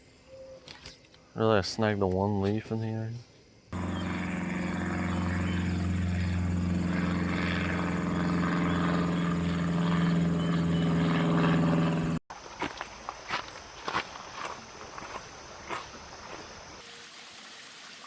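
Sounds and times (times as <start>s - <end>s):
drone propellers humming: 3.8s - 12.2s.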